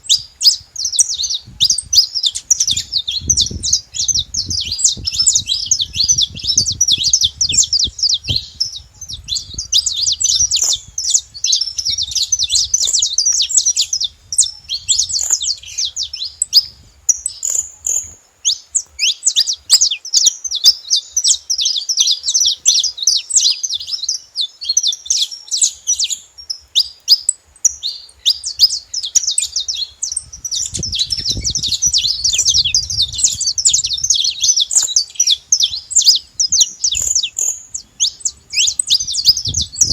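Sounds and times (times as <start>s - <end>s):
finch singing high chirps: 0.0s - 39.9s.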